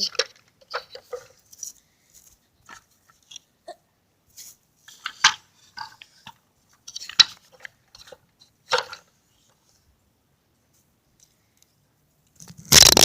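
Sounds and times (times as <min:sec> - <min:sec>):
toy pieces clattering: 0:00.0 - 0:01.8.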